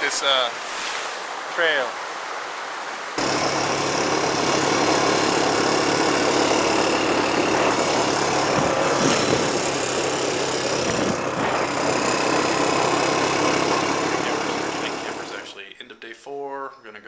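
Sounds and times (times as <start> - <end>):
vehicle engine running: 3.2 - 15.5.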